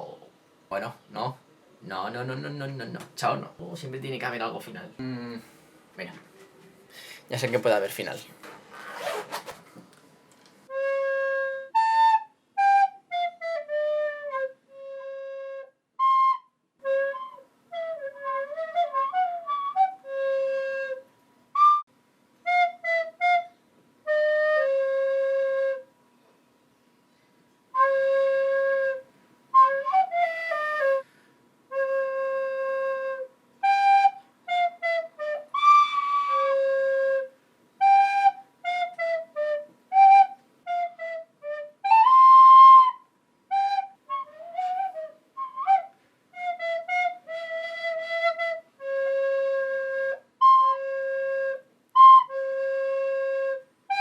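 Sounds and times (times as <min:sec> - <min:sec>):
flute melody: 0:10.7 - 0:25.9, 0:27.7 - 0:31.1, 0:31.7 - 0:54.0.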